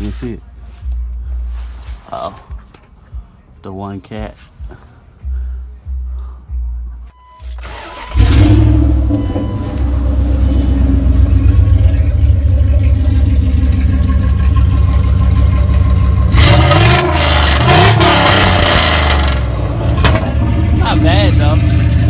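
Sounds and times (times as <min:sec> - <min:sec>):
car engine idling and revving: 0:05.1 - 0:22.0.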